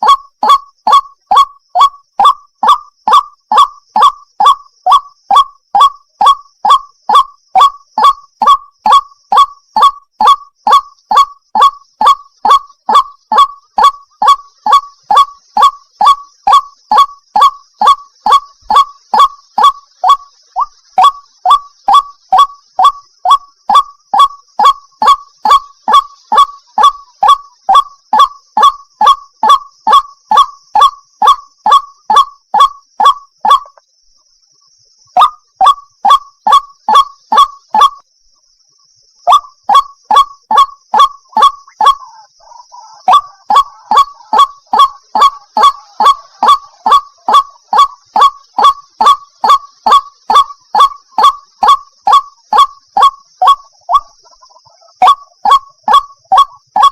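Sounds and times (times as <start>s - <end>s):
waterhen honking calls: 39.3s - 56.9s.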